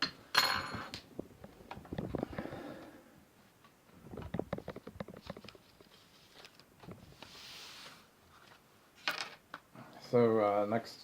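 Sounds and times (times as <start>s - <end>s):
soft hiss: 5.5s - 11.0s.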